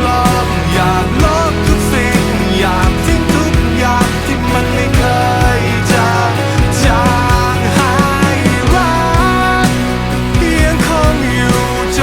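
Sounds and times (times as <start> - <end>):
distorted guitars: 0.0 - 12.0
drums: 0.0 - 12.0
emo rock song: 0.0 - 12.0
sliding melody line: 0.0 - 12.0.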